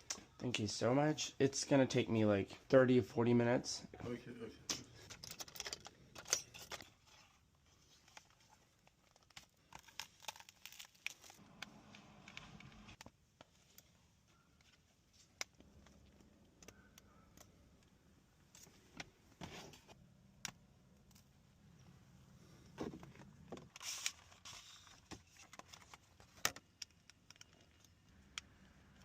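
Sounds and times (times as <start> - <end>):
small tools clicking and rustling: 4.7 - 7.3.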